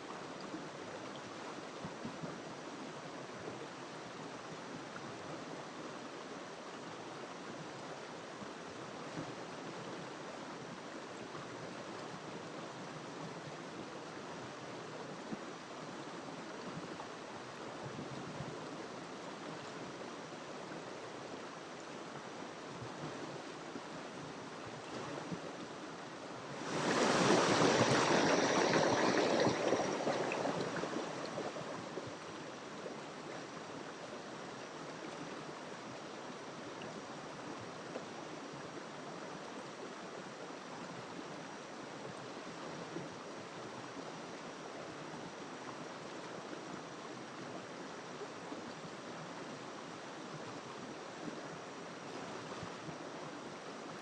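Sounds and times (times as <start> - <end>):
river water rushing: 19.3 - 37.4
louder water surge: 26.4 - 32.2.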